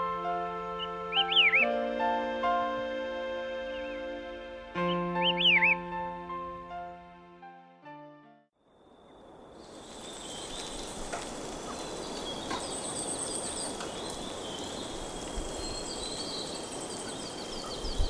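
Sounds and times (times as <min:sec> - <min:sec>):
songbirds chirping and trilling: 0:00.3 - 0:01.8, 0:03.5 - 0:05.8, 0:09.1 - 0:18.0
outdoor background hiss: 0:08.6 - 0:18.0.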